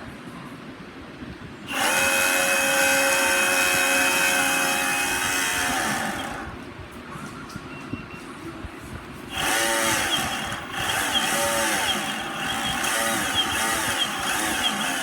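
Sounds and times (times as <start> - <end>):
small electric motor whining: 1.7 - 6.6, 9.3 - 15.0.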